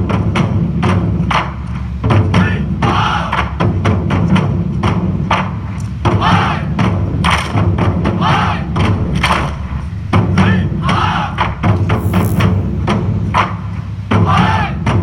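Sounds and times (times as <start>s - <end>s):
held low bass: 8.0s - 13.4s.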